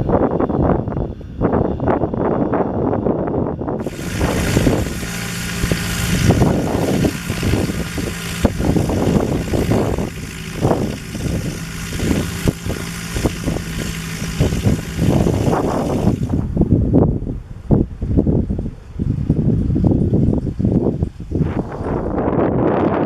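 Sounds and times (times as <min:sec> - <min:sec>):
aircraft engine running: 0:00.0 - 0:17.4
wind buffeting microphone: 0:00.0 - 0:23.0.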